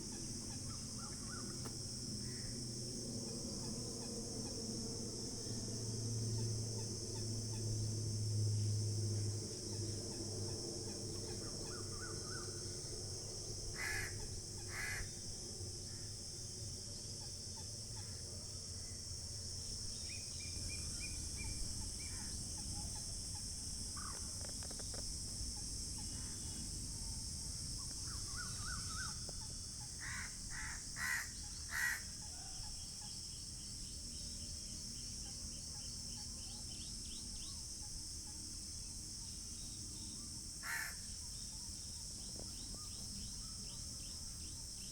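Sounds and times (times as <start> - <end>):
high insect drone: 0.0 - 44.9
crows cawing: 13.8 - 15.1, 30.0 - 32.1, 40.6 - 41.0.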